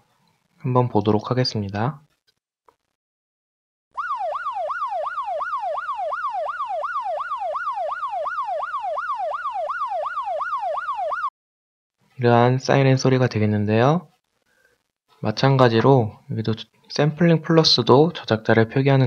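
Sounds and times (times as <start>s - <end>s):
police siren yelp: 4.0s - 11.3s.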